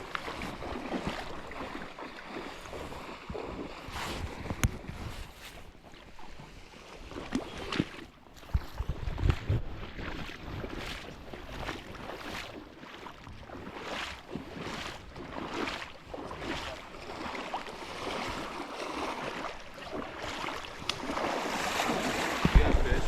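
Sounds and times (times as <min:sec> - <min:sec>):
creek water rushing: 0:00.0 - 0:04.6, 0:13.6 - 0:23.0.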